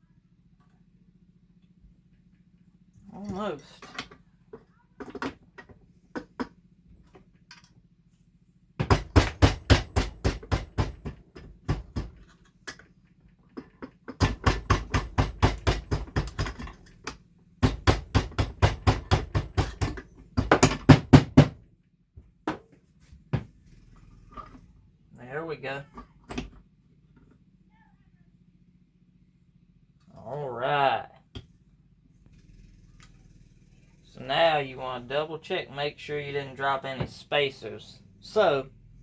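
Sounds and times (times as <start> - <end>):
hammer tapping on engine case: 8.8 - 12.9, 13.5 - 24.6.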